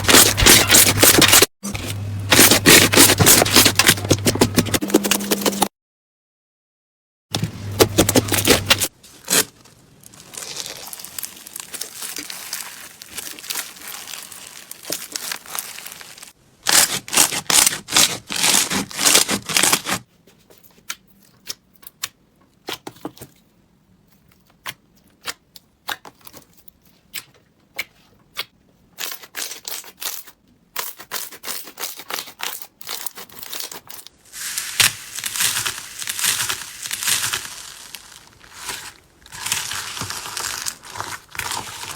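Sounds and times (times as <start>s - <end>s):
crunchy slime crackling and popping: 8.0s - 20.0s, 34.3s - 41.9s.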